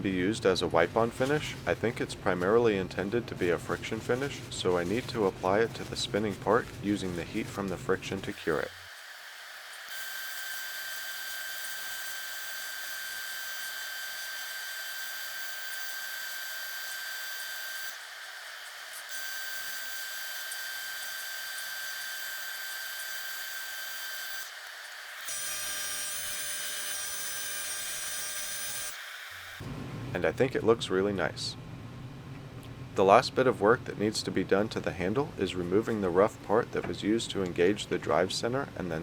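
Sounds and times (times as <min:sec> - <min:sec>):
lathe motor whine: 0:08.6 - 0:29.6.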